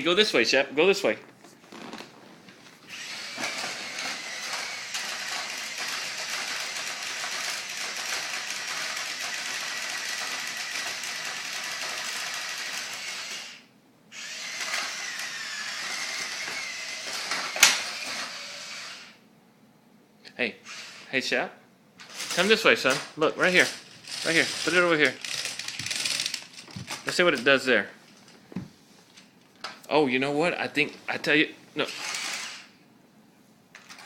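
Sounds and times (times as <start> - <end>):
small electric motor whining: 2.9 - 19.2, 20.7 - 21.1, 31.9 - 32.7.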